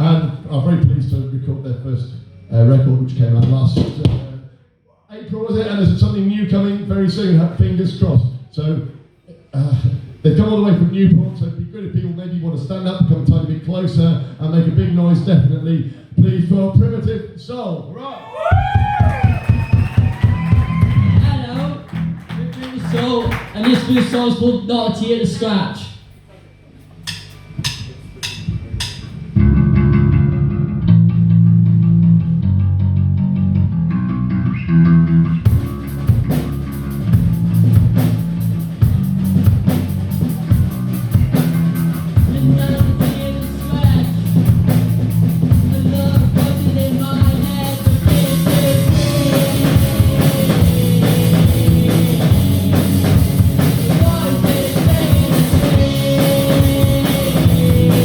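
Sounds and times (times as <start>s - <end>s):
guitar and bass riff: 18.8s - 23.0s, 27.4s - 58.0s
drum kit with cymbals: 35.5s - 58.0s.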